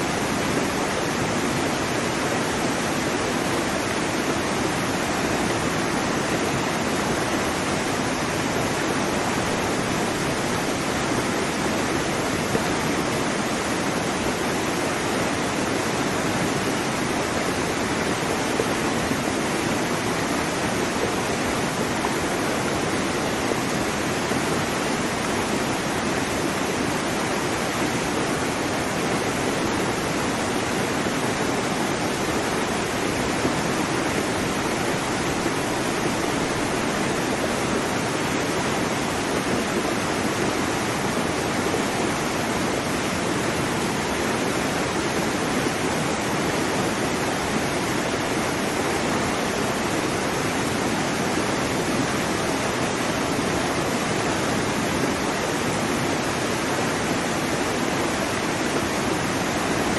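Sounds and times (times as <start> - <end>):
waterfall pouring over rocks: 0.0 - 59.9.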